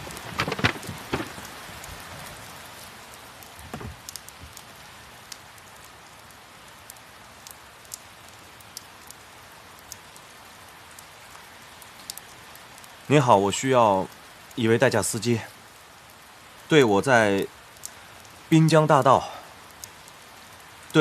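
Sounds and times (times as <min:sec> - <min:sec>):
loud knocks: 0:00.0 - 0:01.6, 0:03.6 - 0:04.0
steady rain falling: 0:00.0 - 0:21.0.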